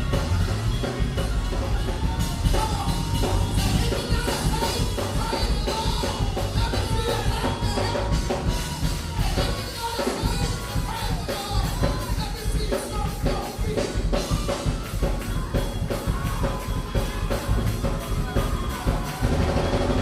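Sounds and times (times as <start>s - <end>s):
drum kit steady beat: 0.0s - 20.0s
person singing: 0.0s - 20.0s.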